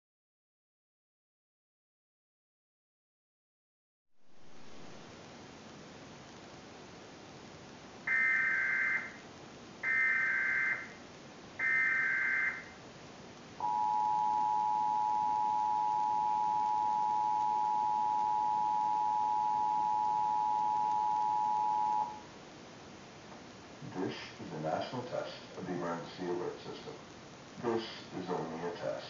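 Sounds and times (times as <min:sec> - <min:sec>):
two-tone alert signal: 0:13.6 - 0:22.2.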